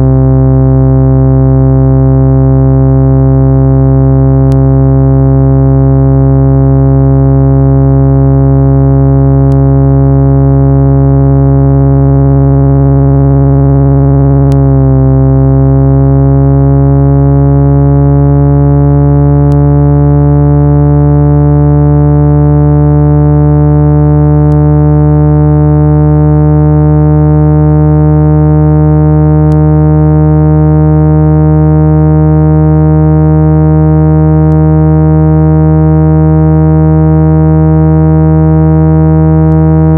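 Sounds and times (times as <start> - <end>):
synthesized low hum: 0.0 - 39.9.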